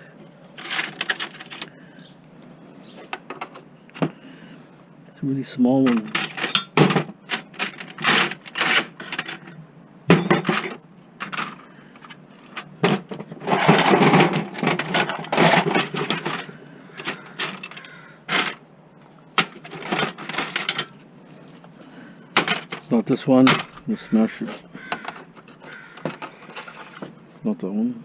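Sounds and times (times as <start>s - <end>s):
metal bits clinking and rattling: 0.6s - 1.7s, 5.8s - 18.6s, 19.4s - 21.0s, 22.3s - 23.8s.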